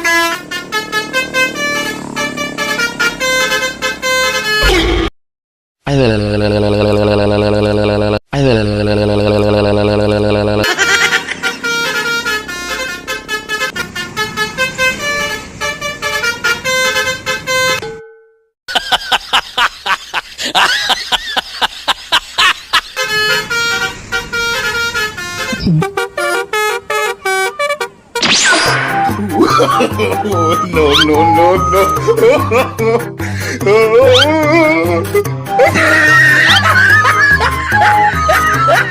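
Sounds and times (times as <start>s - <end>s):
low steady horn tone: 0.0s - 4.8s, 11.4s - 18.4s, 23.0s - 28.0s
multi-tone bus horn tune: 0.0s - 4.9s, 6.3s - 18.5s, 22.8s - 38.9s.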